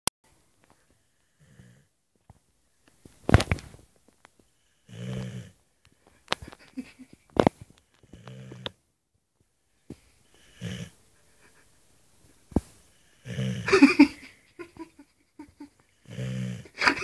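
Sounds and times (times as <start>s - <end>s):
dog snoring: 1.4s - 1.9s, 4.8s - 5.6s, 8.0s - 8.8s, 10.4s - 11.0s, 13.1s - 13.8s, 16.0s - 16.8s.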